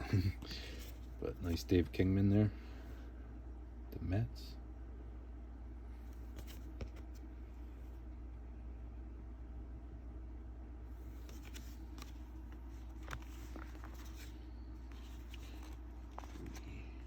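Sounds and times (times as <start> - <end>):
cards and plastic sleeves rustling: 0.0 - 1.9, 6.0 - 7.3, 11.0 - 17.0
steady low hum: 0.0 - 17.0.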